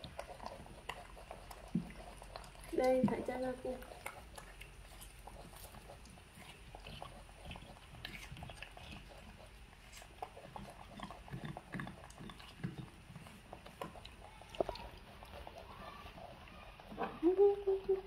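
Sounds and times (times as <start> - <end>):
small eating clicks: 0.0 - 18.0
low monkey sounds: 15.5 - 18.0.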